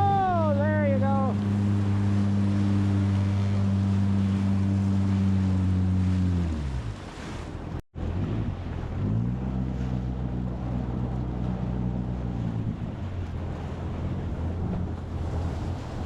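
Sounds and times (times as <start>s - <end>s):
water rushing: 0.0s - 16.0s
watercraft engine: 0.0s - 16.0s
wind on microphone: 0.0s - 16.0s.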